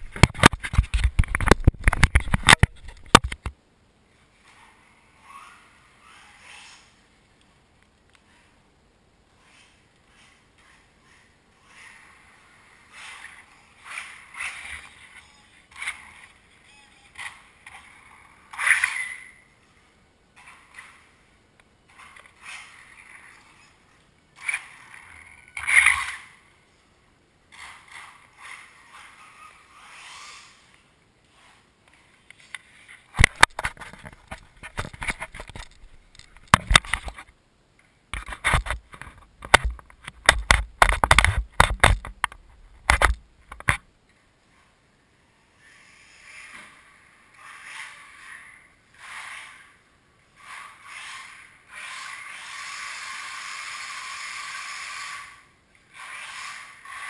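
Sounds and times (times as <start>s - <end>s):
sharp knocks and clatters: 0.0s - 3.6s, 33.2s - 37.3s, 38.1s - 43.8s
toy car tyres scrabbling: 0.0s - 3.6s, 4.4s - 7.0s, 9.4s - 16.4s, 17.2s - 19.6s, 20.4s - 21.3s, 21.9s - 26.5s, 27.5s - 37.4s, 38.1s - 43.8s, 45.6s - 57.0s.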